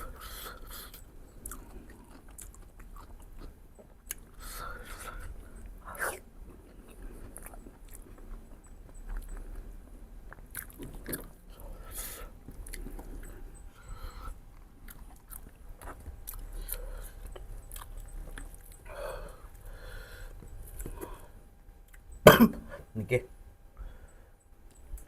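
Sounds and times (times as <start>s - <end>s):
chewing and biting: 0.4s - 11.8s, 12.4s - 18.9s.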